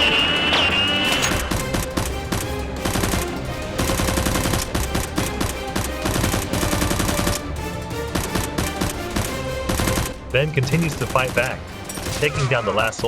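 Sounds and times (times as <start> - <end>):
action music: 0.0 - 13.0
automatic gunfire: 3.8 - 7.4.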